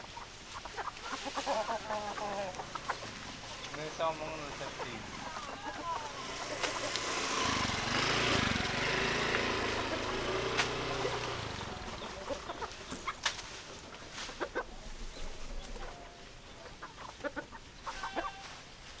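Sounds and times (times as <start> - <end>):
chickens clucking: 0.0 - 18.6
loud low motor hum: 1.8 - 14.1.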